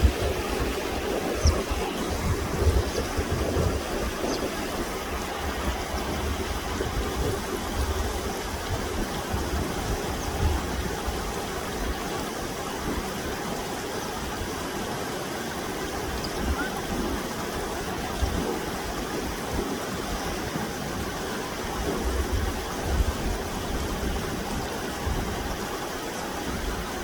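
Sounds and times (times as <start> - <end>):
water rushing: 0.0 - 27.0.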